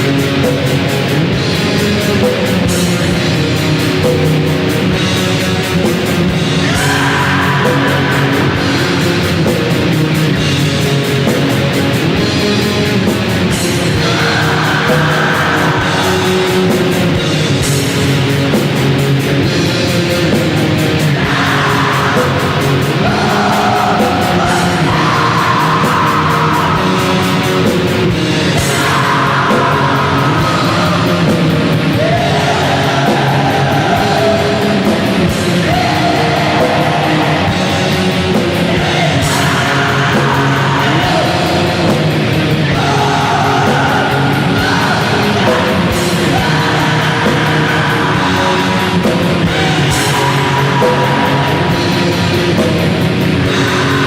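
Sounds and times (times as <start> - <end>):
harsh vocals: 0.0 - 54.0
heavy metal guitar music: 0.0 - 54.0.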